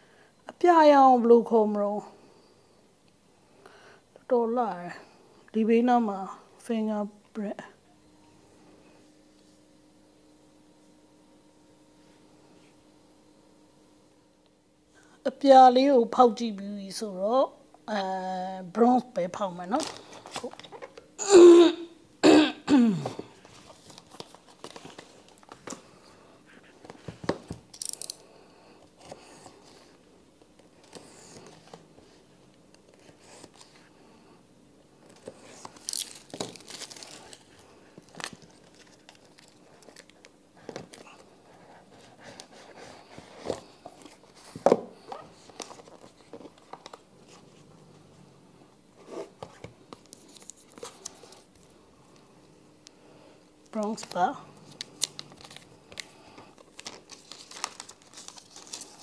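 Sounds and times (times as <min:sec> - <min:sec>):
person coughing: 0:21.2 - 0:23.2
packaging clicks and rustles: 0:23.4 - 0:25.8, 0:35.0 - 0:41.3, 0:54.0 - 0:59.0.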